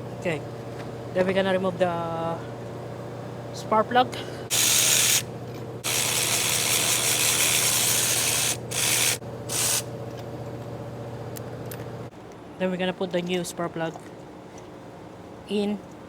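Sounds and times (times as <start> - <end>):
ratchet wrench clicking: 4.5 - 5.2, 5.8 - 9.9.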